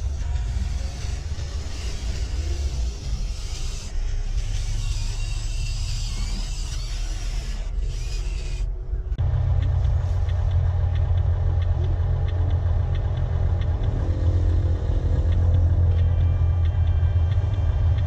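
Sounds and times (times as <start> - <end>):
music: 0.0 - 6.4, 13.5 - 18.0
steady low rumble: 8.5 - 18.0.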